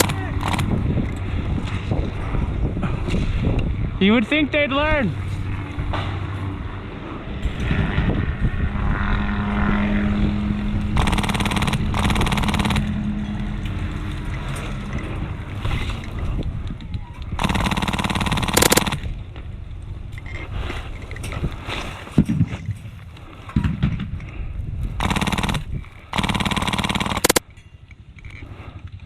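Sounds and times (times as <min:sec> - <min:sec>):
airsoft gun full-auto bursts: 0:00.0 - 0:00.8, 0:11.0 - 0:12.9, 0:17.4 - 0:19.1, 0:25.0 - 0:27.4
noisy background: 0:00.0 - 0:20.4, 0:24.8 - 0:28.4.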